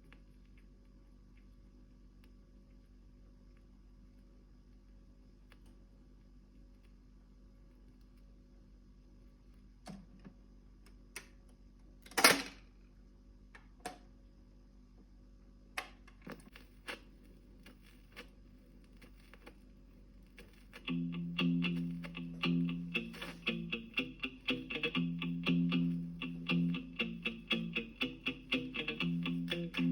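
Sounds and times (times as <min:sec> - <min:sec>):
steady low hum: 0:17.0 - 0:29.9
guitar music: 0:20.8 - 0:29.9.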